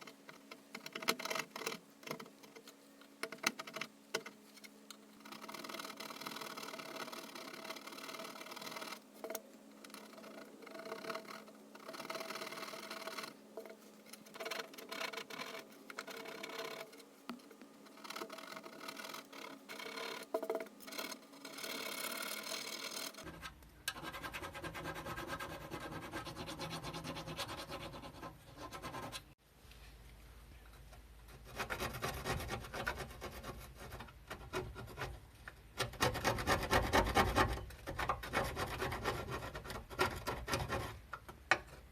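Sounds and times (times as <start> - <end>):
scraping rust off metal: 0.0 - 25.4.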